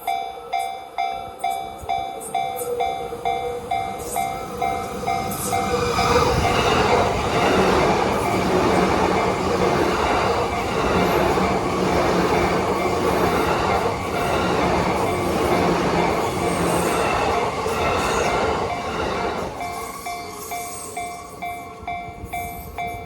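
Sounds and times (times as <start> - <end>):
train wheels on rails: 0.0 - 23.0.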